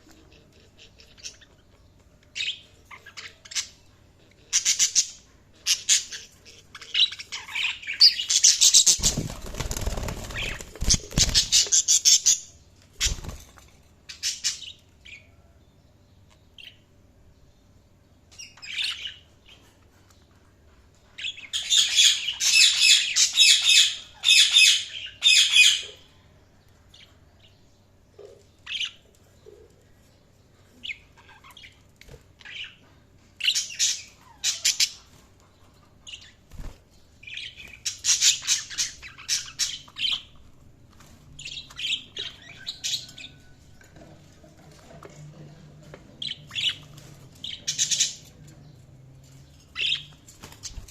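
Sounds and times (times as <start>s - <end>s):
budgerigars chirping and warbling: 0.1s - 13.4s, 21.2s - 26.1s, 30.8s - 40.4s, 41.4s - 43.5s, 46.2s - 48.8s, 49.7s - 50.9s
wings fluttering: 8.6s - 12.2s, 12.9s - 13.8s, 50.2s - 50.9s.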